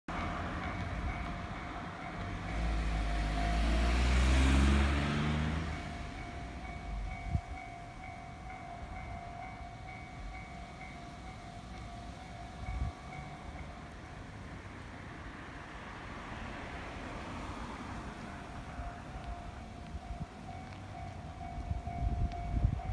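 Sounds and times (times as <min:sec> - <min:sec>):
level crossing warning bell: 0:00.1 - 0:14.6, 0:17.7 - 0:22.9
electric train rumbling past: 0:00.1 - 0:22.9.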